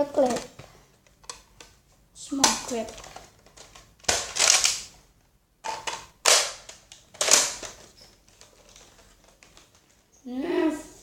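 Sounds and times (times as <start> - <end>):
plastic toy gun clacking: 2.4 - 4.9, 5.6 - 9.8.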